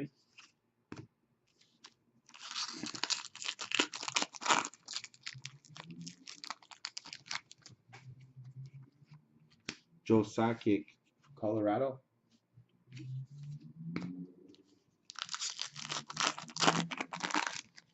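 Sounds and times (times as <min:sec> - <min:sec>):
plastic packaging crinkling: 0:02.3 - 0:07.7, 0:15.1 - 0:17.9.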